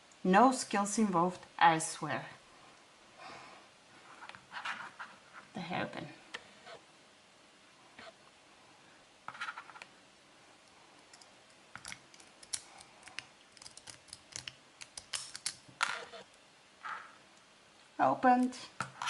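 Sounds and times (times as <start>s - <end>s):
hairpin clicking in padlock: 11.2s - 15.6s.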